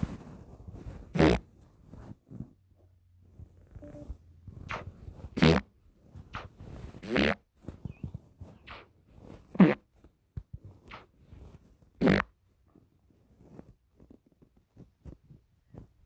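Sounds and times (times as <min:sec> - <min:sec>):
short farts: 0:01.1 - 0:01.5, 0:03.8 - 0:05.7, 0:06.3 - 0:07.5, 0:09.5 - 0:09.9, 0:10.9 - 0:11.1, 0:12.0 - 0:12.4.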